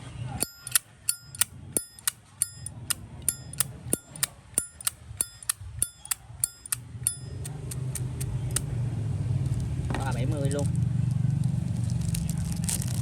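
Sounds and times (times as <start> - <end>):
lighter lid clinking open and shut: 0.4 - 8.7.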